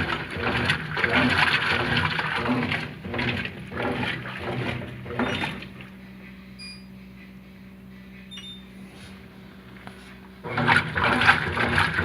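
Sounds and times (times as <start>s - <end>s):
washing machine water swishing: 0.0s - 6.2s, 8.8s - 12.0s
low steady hum: 0.0s - 12.0s.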